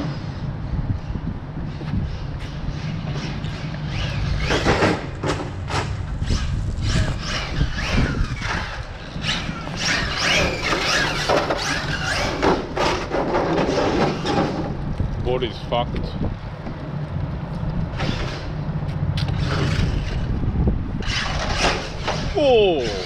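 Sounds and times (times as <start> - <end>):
wind rumbling on microphone: 0.0 - 23.0
electric motor whining: 2.4 - 5.1, 6.0 - 14.8, 17.9 - 23.0
tyres squealing: 6.2 - 14.7.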